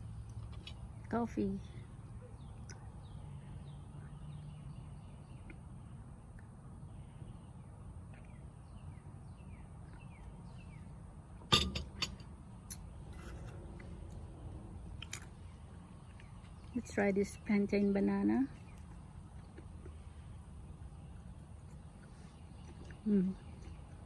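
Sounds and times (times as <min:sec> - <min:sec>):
bird chirping: 0:00.6 - 0:11.0.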